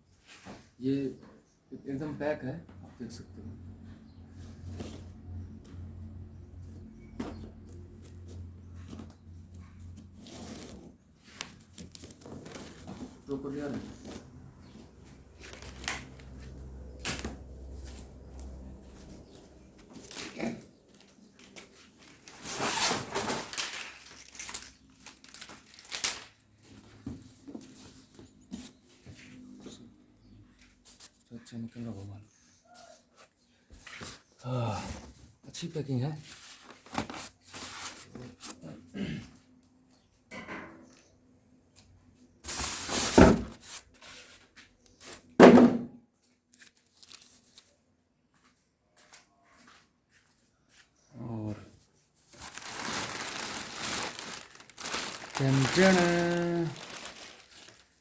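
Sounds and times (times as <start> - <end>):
packaging rustling and scraping: 7.3 - 29.6, 36.3 - 38.6, 42.4 - 45.3, 46.5 - 47.8, 52.2 - 58.0.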